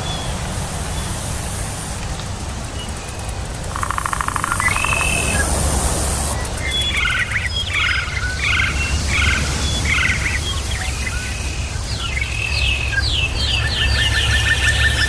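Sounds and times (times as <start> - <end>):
songbirds singing: 0.0 - 15.0
steady low rumble: 0.0 - 15.0.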